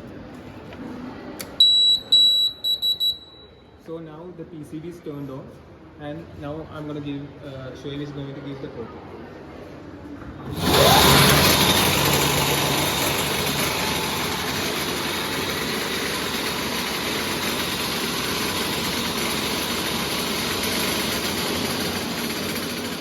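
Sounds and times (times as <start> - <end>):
loud drivetrain noise: 10.4 - 23.0
electric motor whine: 10.5 - 23.0.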